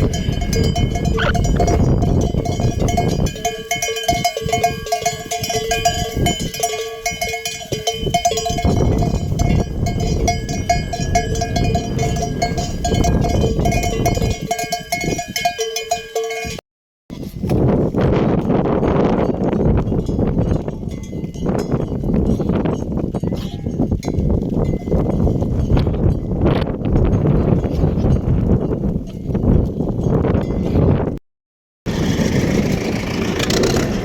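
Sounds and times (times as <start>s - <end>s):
animal neck bells clanking: 0.0s - 16.6s, 18.3s - 31.0s.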